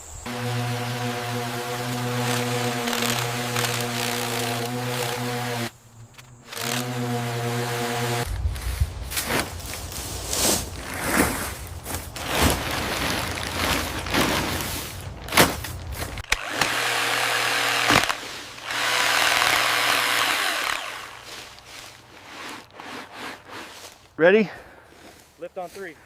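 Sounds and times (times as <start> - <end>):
power tool running: 0.2 - 5.7, 6.4 - 8.3, 16.2 - 23.0.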